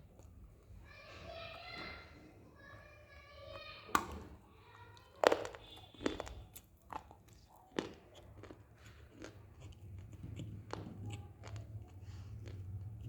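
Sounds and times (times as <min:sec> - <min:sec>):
clay crunching when chewed: 0:05.0 - 0:13.0.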